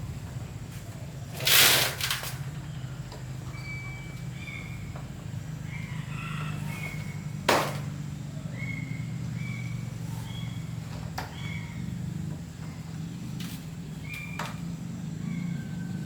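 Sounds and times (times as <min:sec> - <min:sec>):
steady low hum: 0:00.0 - 0:16.0
loud sharp knock: 0:07.5 - 0:07.9.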